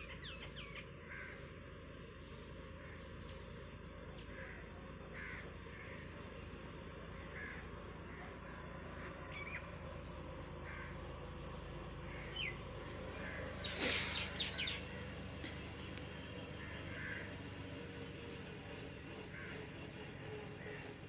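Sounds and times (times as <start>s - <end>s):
crows cawing: 0.0s - 1.8s, 4.2s - 6.1s, 7.2s - 9.2s, 10.6s - 11.1s, 12.0s - 14.7s, 16.5s - 17.4s, 19.3s - 19.7s, 20.5s - 21.0s
steady low hum: 0.0s - 21.0s.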